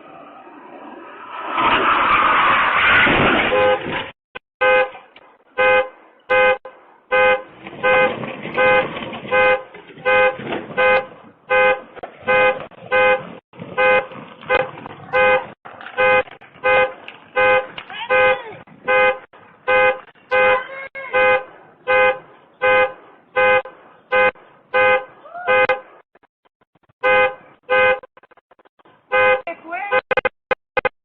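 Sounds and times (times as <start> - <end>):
loud crash: 0.2 - 4.2
car alarm horn blasts: 3.5 - 3.9, 4.6 - 5.0, 5.6 - 25.9, 27.0 - 28.1, 29.1 - 30.2.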